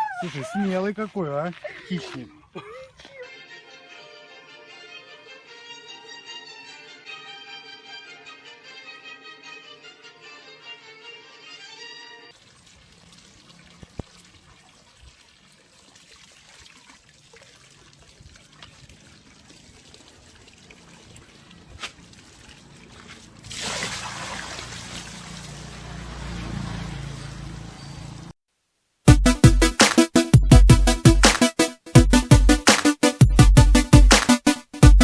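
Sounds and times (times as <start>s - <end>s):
running water: 12.3s - 27.6s.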